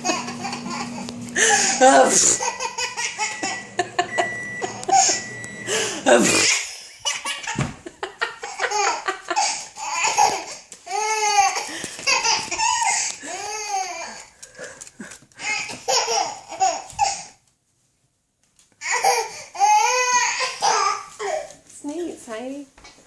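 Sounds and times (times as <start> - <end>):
small child laughing: 0.0 - 5.2, 6.1 - 14.3, 15.4 - 17.4
person sneezing: 5.8 - 6.7.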